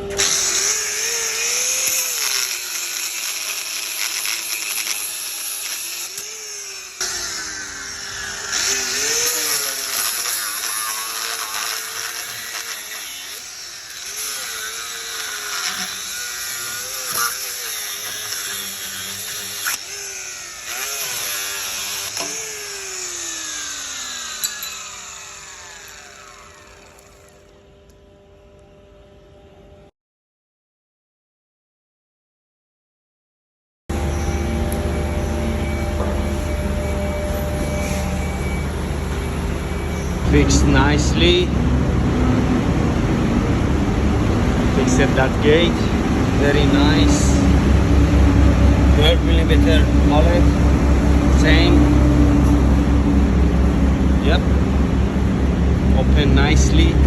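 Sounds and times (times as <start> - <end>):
electric drill running: 0.0 - 27.7.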